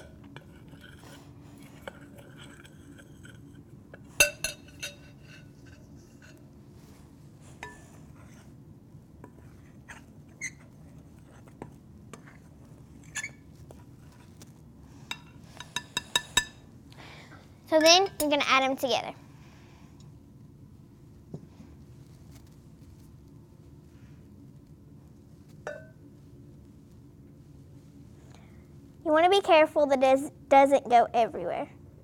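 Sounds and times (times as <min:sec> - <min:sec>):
spoon clinking in mixing bowl: 0:25.7 - 0:26.0.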